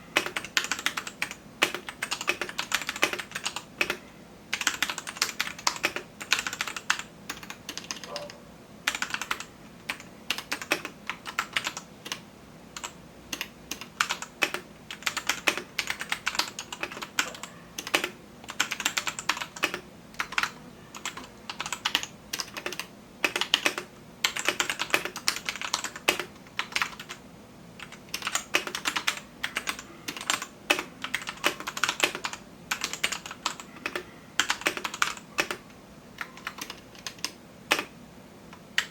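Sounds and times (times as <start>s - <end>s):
mechanical keyboard typing: 0.2s - 27.2s, 27.8s - 37.9s.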